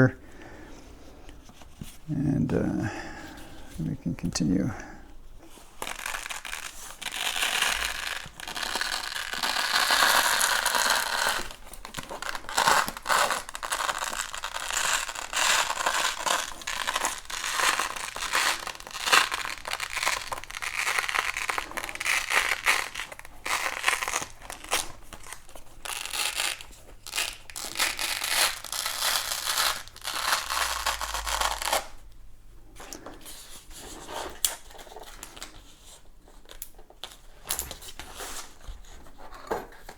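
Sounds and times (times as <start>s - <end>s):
velcro peeling and rasping: 5.5s - 32.0s.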